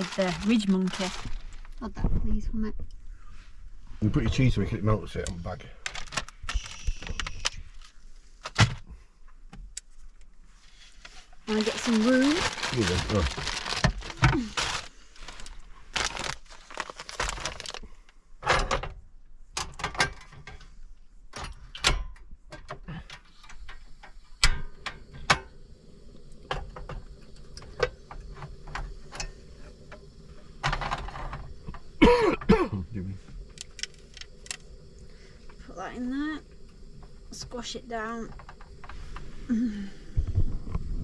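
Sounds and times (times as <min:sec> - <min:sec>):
rustling: 0:00.0 - 0:02.4, 0:09.9 - 0:18.1
faint steady hum: 0:00.0 - 0:41.0
cooking gear clicks and knocks: 0:33.5 - 0:34.7.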